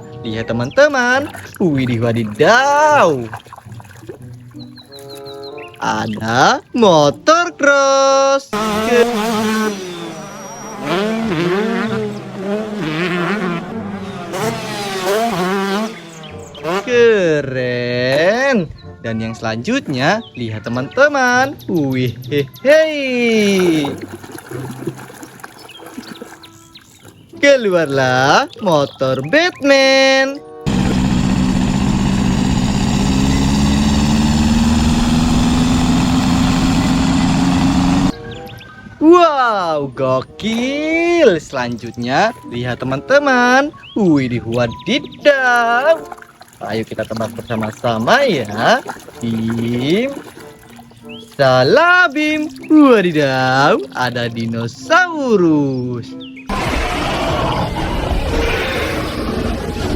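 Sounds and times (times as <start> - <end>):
dirt bike engine revving: 8.5 - 17.2, 30.7 - 38.2.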